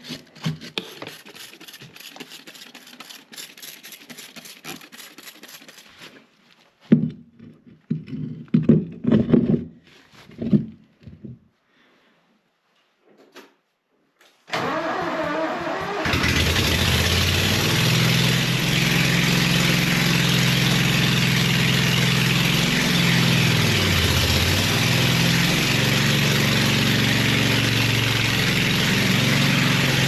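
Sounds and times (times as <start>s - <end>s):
engine cranking: 14.5s - 18.1s
engine running: 14.6s - 30.0s.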